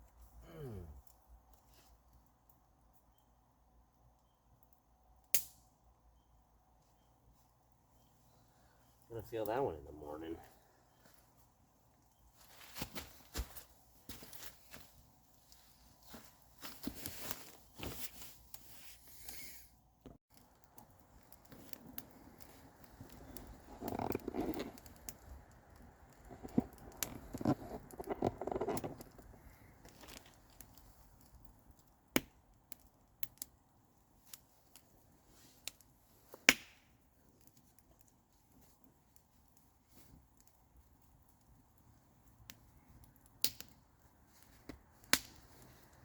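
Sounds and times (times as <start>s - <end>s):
rustling crinkling handling: 12.4s - 19.0s.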